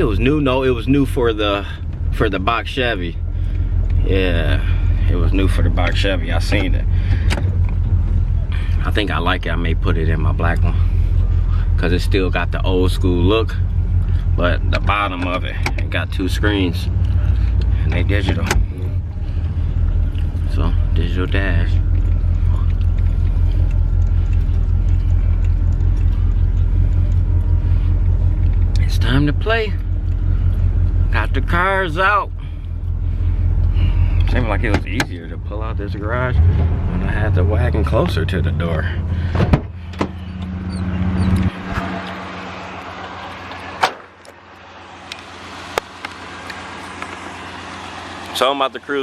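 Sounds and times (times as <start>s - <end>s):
car engine idling: 0.0s - 49.0s
car door shutting: 18.2s - 18.7s, 39.2s - 41.9s, 43.7s - 44.1s.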